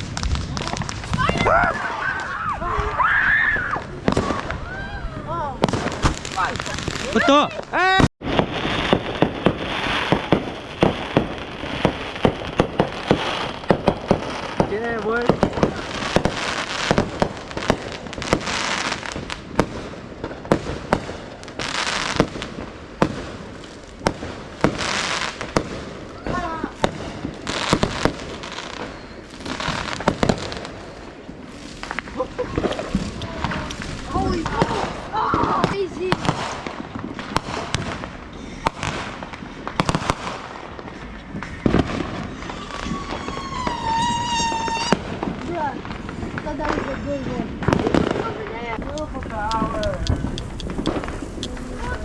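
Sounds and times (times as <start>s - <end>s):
fireworks bangs: 0.0s - 52.0s
fireworks crackling hiss: 0.0s - 52.0s
whistling firework screech: 28.6s - 30.1s, 41.4s - 45.0s
firework thump: 47.6s - 52.0s.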